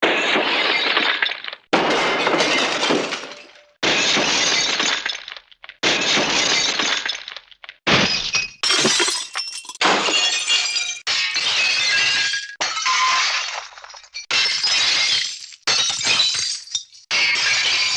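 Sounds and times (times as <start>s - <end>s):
cartoon crashes of shattering: 0.0s - 5.1s, 7.9s - 16.3s
tinkling debris: 8.6s - 9.8s.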